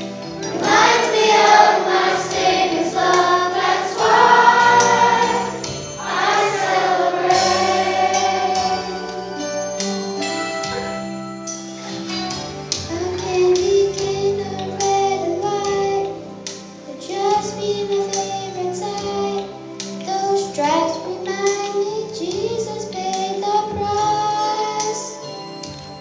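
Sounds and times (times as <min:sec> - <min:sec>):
instrumental accompaniment: 0:00.0 - 0:20.2
children singing: 0:00.4 - 0:09.2.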